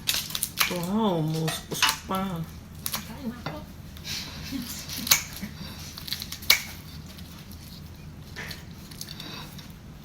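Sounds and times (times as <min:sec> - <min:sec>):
utensils clicking against dishes: 0:00.0 - 0:07.2
steady low hum: 0:00.0 - 0:10.0.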